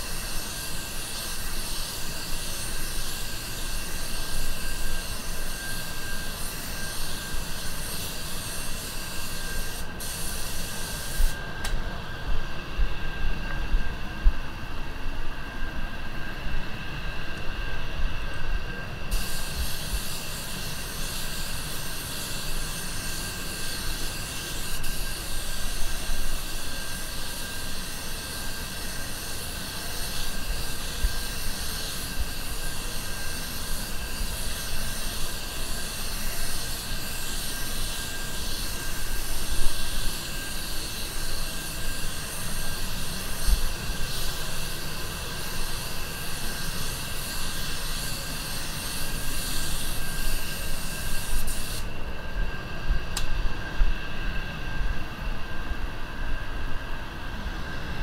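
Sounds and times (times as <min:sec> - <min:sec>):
spray gun hissing: 0:06.4 - 0:11.4, 0:19.1 - 0:51.9.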